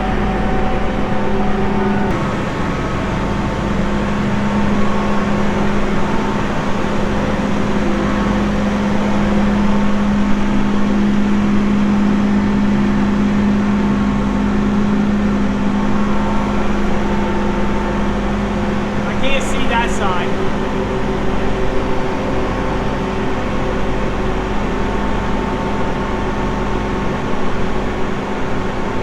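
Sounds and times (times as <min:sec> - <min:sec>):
machine humming: 0:00.0 - 0:28.2.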